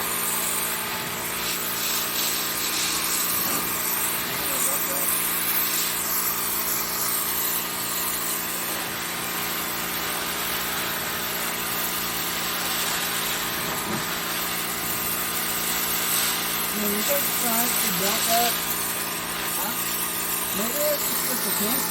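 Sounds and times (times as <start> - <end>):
pressure washer engine hum: 0.0 - 21.9
water spray hissing: 0.1 - 8.4, 14.1 - 21.9.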